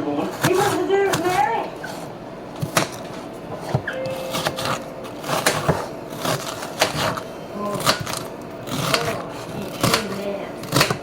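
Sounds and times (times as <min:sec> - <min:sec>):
faint steady hum: 0:00.0 - 0:11.0.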